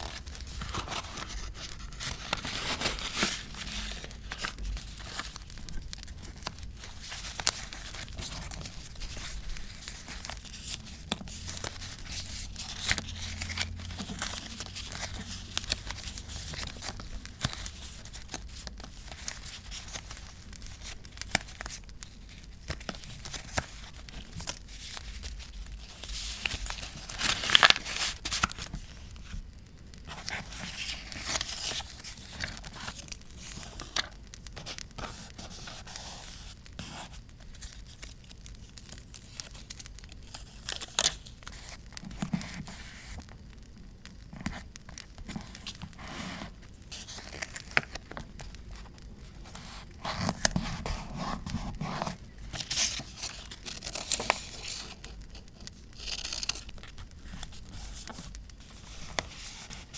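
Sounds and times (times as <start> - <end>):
paper rustling and crinkling: 0.0 - 43.3, 44.3 - 59.9.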